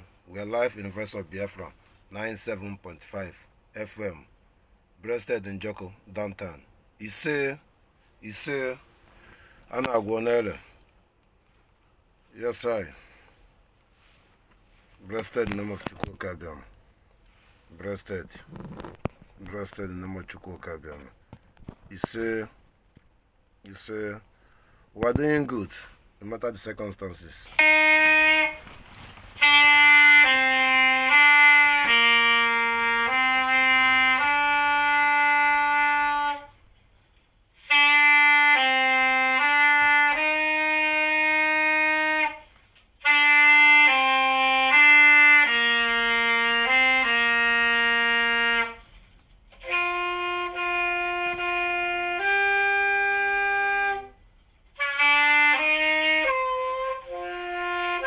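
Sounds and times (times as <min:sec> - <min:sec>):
solo wind instrument melody: 0:27.4 - 0:36.7, 0:37.6 - 0:58.0.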